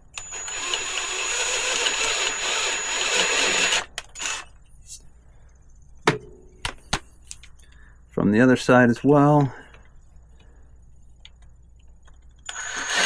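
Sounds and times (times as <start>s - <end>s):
power drill drilling metal: 0.2s - 4.4s, 12.5s - 13.0s.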